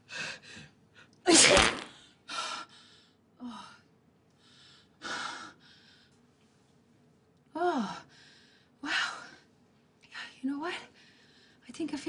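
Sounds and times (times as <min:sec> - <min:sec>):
woman sneezing: 0:01.3 - 0:01.9.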